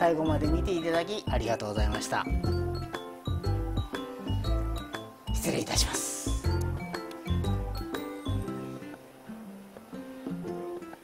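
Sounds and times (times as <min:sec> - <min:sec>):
plucked-string tune with bass beat: 0:00.0 - 0:05.1, 0:06.4 - 0:09.0.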